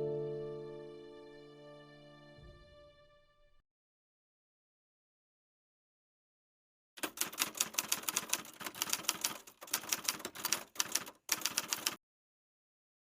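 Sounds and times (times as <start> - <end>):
rapid keyboard typing: 7.0 - 12.0.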